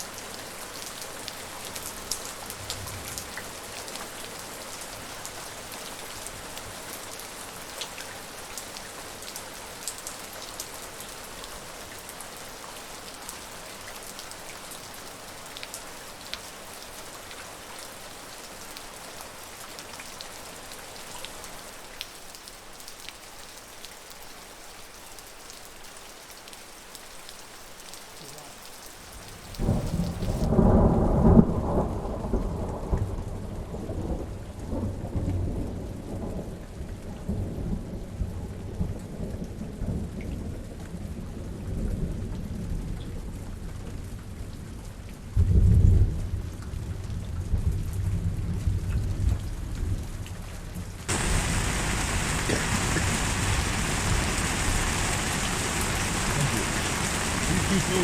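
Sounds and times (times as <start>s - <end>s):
steady rain hiss: 0.0s - 36.6s, 50.6s - 58.0s
raindrop ticks: 51.1s - 54.1s
loud thunder rumble: 51.1s - 58.0s.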